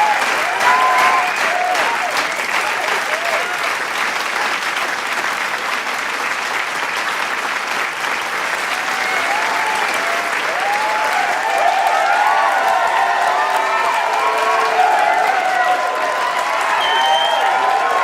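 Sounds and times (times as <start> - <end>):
voices cheering: 0.0 - 3.8, 8.6 - 18.0
crowd applauding: 0.0 - 18.0.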